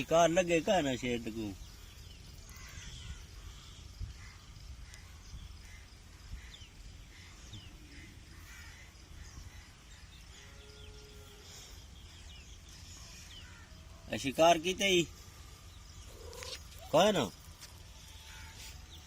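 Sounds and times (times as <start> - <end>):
birds chirping: 0.0 - 19.0
faint pitched call: 16.0 - 17.1.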